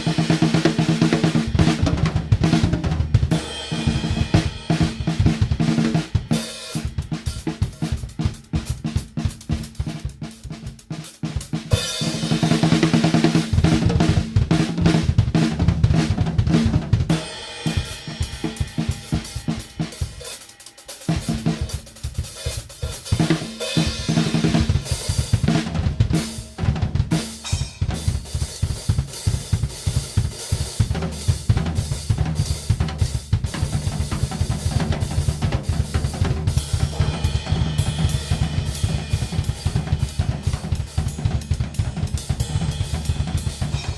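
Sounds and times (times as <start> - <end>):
drum kit playing fast: 0.0 - 43.9.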